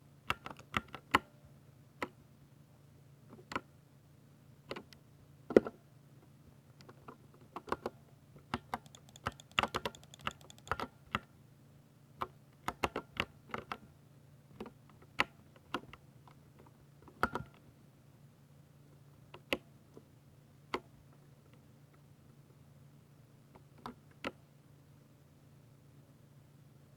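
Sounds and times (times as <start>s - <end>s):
mechanical keyboard typing: 8.6s - 11.0s.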